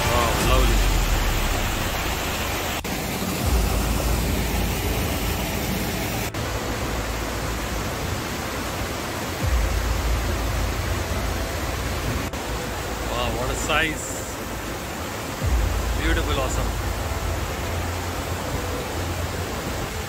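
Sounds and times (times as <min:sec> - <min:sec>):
low rumble: 0:00.0 - 0:08.0, 0:09.4 - 0:13.1, 0:15.4 - 0:18.7
waterfall rushing: 0:00.0 - 0:20.0.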